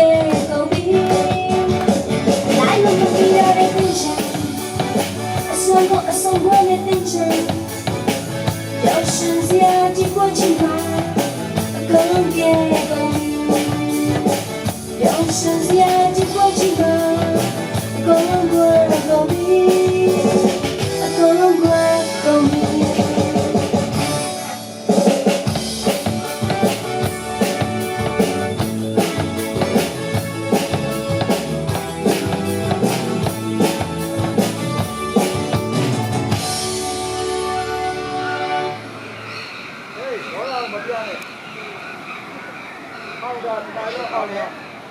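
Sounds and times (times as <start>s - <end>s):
person singing: 0.0s - 7.8s, 8.8s - 24.2s
drum kit beat: 0.0s - 38.0s
live pop band playing: 0.0s - 39.1s.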